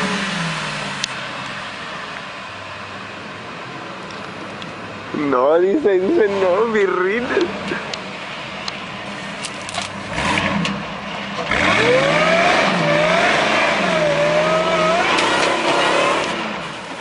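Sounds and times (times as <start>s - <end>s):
pickup truck engine revving: 0.0s - 1.8s, 9.8s - 17.0s.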